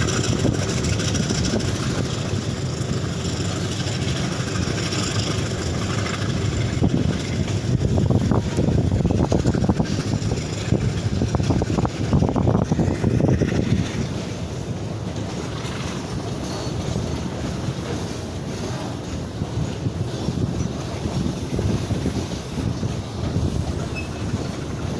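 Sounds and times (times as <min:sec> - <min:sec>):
freight train wheels clattering: 0:00.0 - 0:24.9
wind buffeting microphone: 0:00.0 - 0:24.9.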